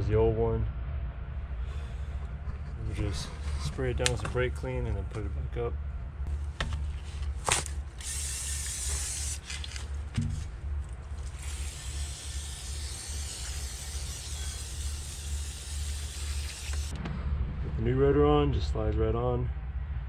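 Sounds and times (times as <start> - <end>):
aerosol can spraying: 8.0 - 10.4, 11.2 - 16.9.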